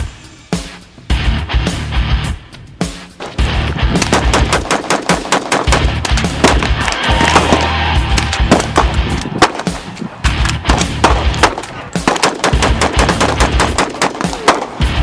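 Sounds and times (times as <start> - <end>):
music: 0.0 - 15.0
rifle firing rapid shots: 3.2 - 14.9.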